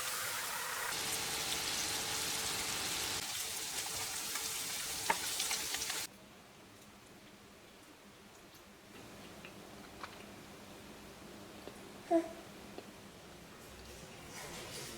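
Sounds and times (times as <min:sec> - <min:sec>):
food sizzling in hot oil: 0:00.0 - 0:06.1.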